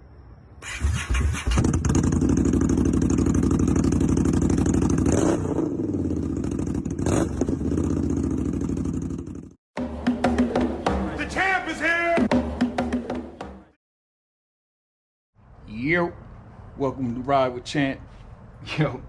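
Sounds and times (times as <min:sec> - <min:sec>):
motorcycle engine revving: 0:00.6 - 0:09.6.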